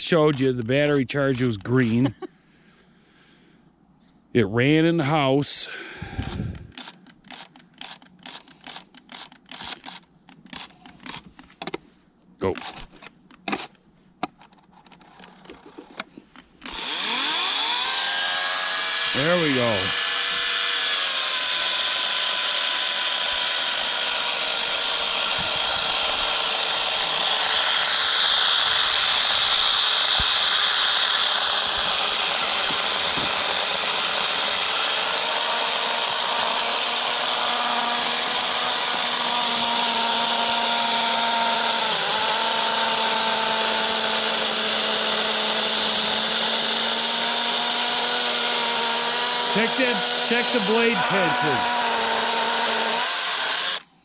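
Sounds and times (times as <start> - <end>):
electric chainsaw cutting log: 6.0 - 11.3, 16.6 - 53.9.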